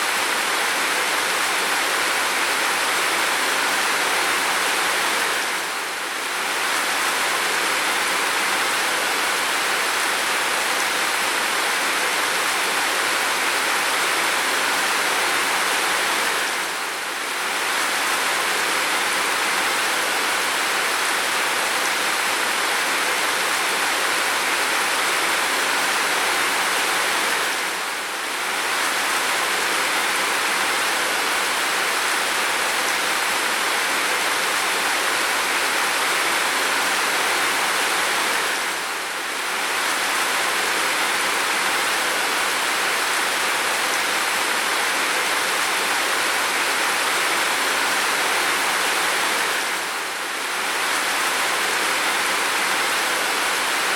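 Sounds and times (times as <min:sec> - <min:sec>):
heavy rain hiss: 0:00.0 - 0:53.9.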